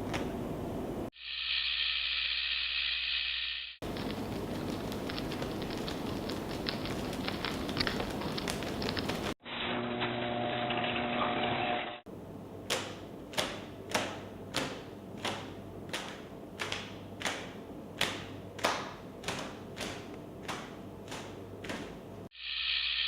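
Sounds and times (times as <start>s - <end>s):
sharp taps or knocks: 12.7s - 22.0s.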